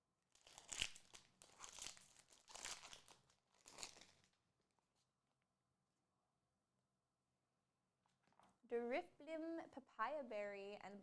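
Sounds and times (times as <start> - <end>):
card packaging crinkling: 0.4 - 4.4.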